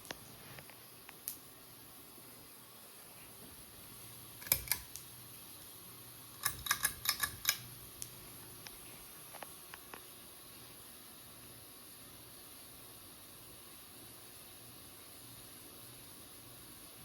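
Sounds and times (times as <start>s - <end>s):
ceiling fan humming: 0.0s - 17.0s.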